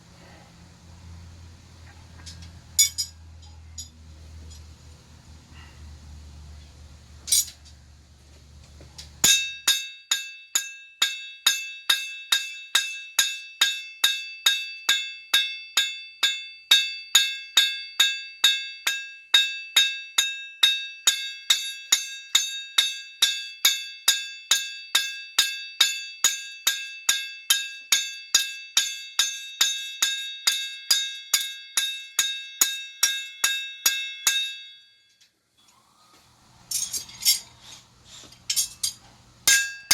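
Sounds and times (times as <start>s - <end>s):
hammer ringing on steel: 2.8s - 3.2s, 9.2s - 34.8s, 39.5s - 39.9s.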